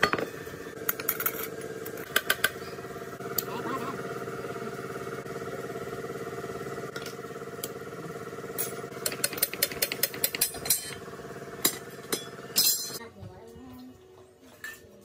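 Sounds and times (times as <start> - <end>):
motor running: 0.0 - 13.0
sharp metallic clicks and knocks: 8.6 - 11.0.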